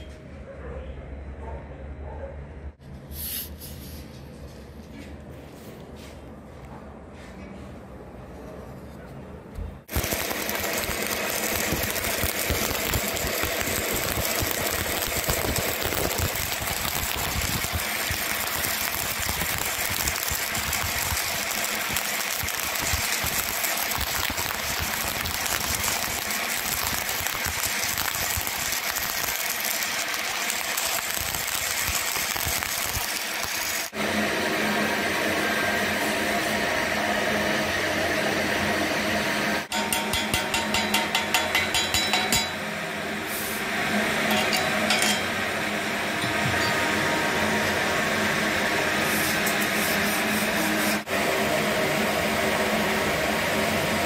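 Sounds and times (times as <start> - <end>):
arc welding crackling: 9.9 - 34.0.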